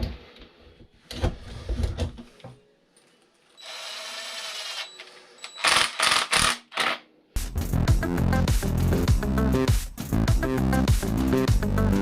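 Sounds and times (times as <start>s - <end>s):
small power tool whirring: 3.6s - 6.4s.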